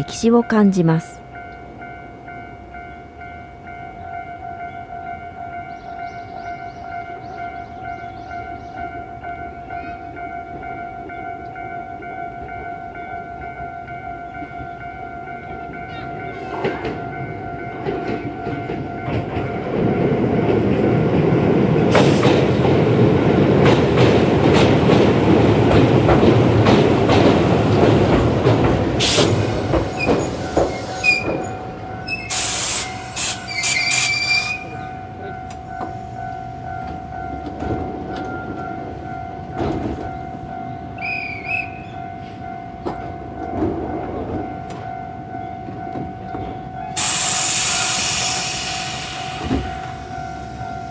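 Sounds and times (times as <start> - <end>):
level crossing alarm ringing: 0.0 - 50.9
train wheels clacking on bridge: 15.4 - 40.5, 45.6 - 50.9
brake hisses: 29.0 - 31.4, 32.1 - 34.7, 47.0 - 50.2
high brake squeals: 29.0 - 34.9, 41.0 - 41.9, 47.0 - 50.6.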